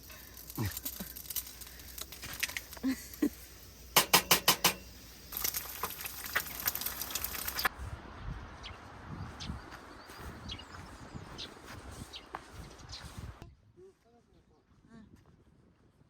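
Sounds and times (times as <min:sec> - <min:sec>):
utensils clicking and clattering: 0:04.0 - 0:04.9.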